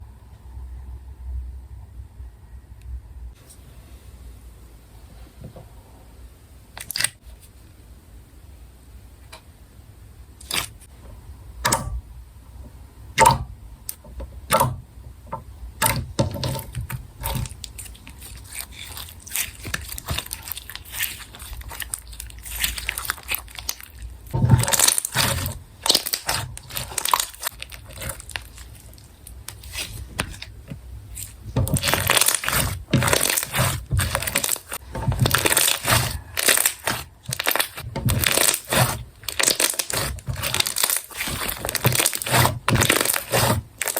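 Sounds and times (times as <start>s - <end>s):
slime squished by hand: 15.8s - 43.9s.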